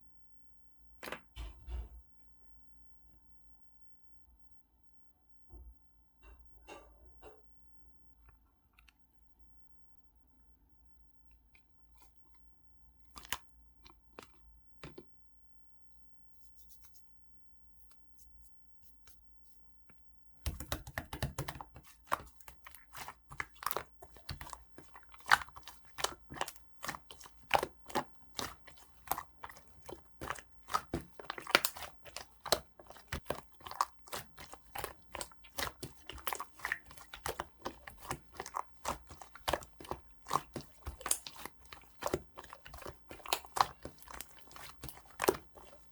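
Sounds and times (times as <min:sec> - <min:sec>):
slime squished by hand: 0:13.1 - 0:14.5, 0:20.4 - 0:45.9.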